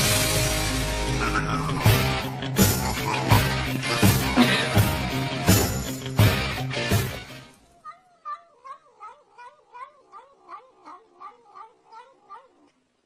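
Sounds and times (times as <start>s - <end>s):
cat yowling: 7.7s - 12.8s.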